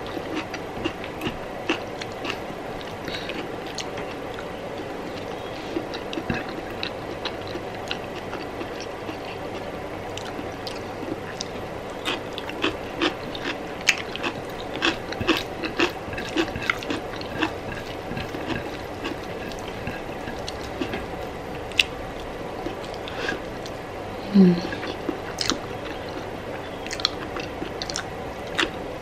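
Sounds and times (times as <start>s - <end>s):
faint room hiss: 0.0s - 29.0s
wet chewing and mouth smacks: 5.1s - 23.8s, 24.8s - 28.8s.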